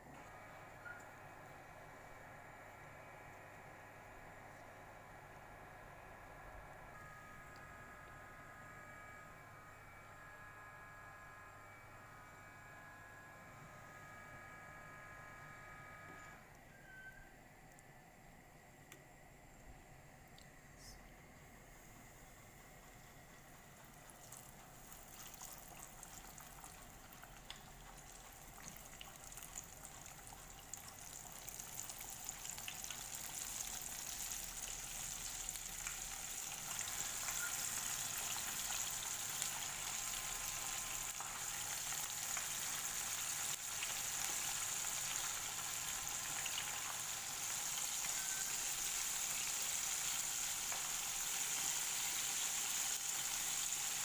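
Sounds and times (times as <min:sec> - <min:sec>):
chicken deep-frying in oil: 0:23.0 - 0:54.0.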